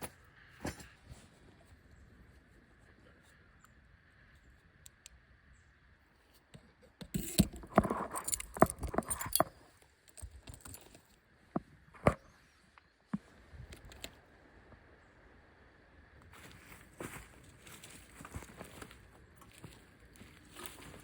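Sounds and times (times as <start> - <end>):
metal camping gear jangling: 7.1 - 11.2.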